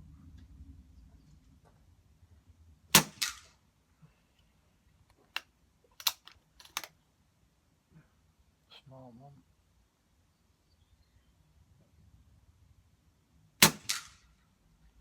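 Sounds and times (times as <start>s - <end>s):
air rifle shot crack: 2.9s - 3.6s, 13.6s - 14.3s
sharp clicks: 5.1s - 7.0s
pellet smacking metal target: 13.6s - 14.2s.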